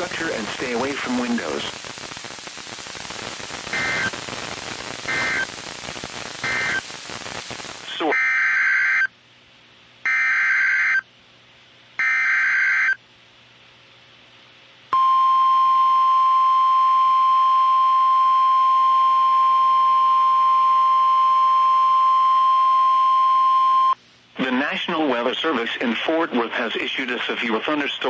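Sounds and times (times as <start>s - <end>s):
digital data burst screech: 3.7s - 4.2s, 5.0s - 5.6s, 6.4s - 6.9s.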